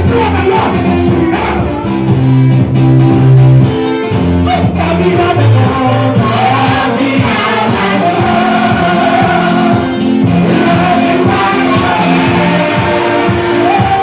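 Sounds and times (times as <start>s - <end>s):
instruments with steady beat: 0.0s - 14.0s
voices singing together: 4.5s - 14.0s.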